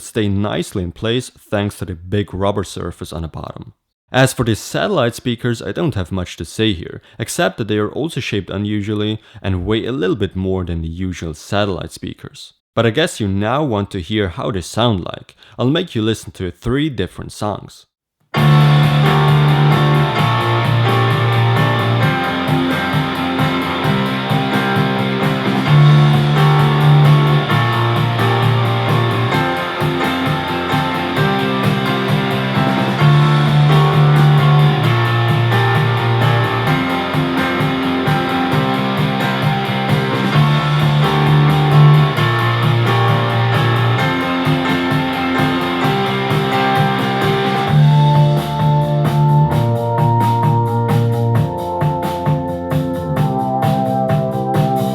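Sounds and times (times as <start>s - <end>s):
bass line: 18.4s - 54.9s
rock music through speakers: 18.4s - 54.9s.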